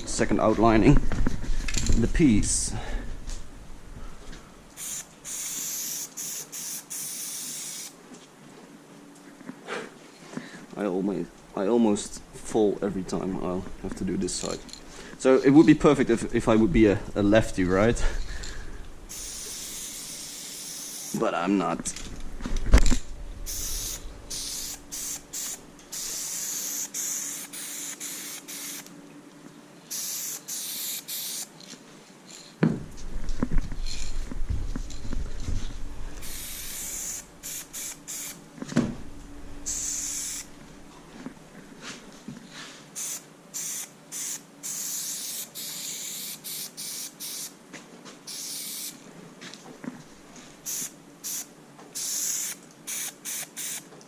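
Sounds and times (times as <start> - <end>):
spray paint can hissing: 4.8 - 8.0, 19.1 - 21.2, 23.5 - 28.9, 29.9 - 31.5, 36.2 - 38.4, 39.7 - 40.5, 43.0 - 47.5, 48.3 - 49.0, 50.6 - 53.9
footsteps and handling thumps: 32.4 - 35.9, 38.6 - 39.1.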